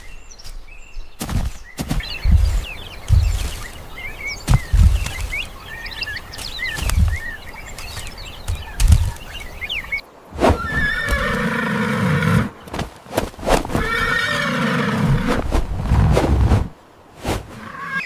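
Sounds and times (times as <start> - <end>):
small birds chirping: 0.0 - 15.4
dull low thumps: 1.2 - 5.6, 6.4 - 7.8
horse neighing: 10.5 - 12.6, 13.7 - 15.3, 17.6 - 18.0.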